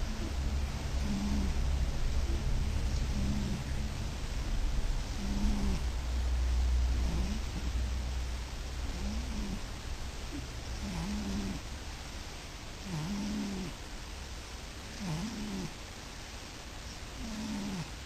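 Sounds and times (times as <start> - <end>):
cat snoring: 0.0 - 3.8, 5.0 - 5.9, 6.9 - 7.8, 8.8 - 9.7, 10.3 - 11.6, 12.8 - 13.8, 14.8 - 15.8, 17.2 - 18.0.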